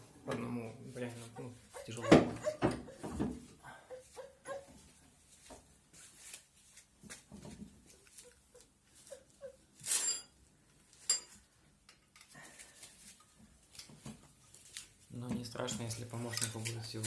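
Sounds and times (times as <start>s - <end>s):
tools and parts clicking: 11.0s - 12.4s.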